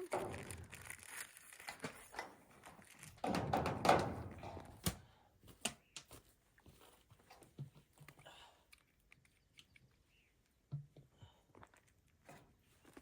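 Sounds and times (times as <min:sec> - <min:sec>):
sharp clicks and knocks: 0:03.0 - 0:05.0.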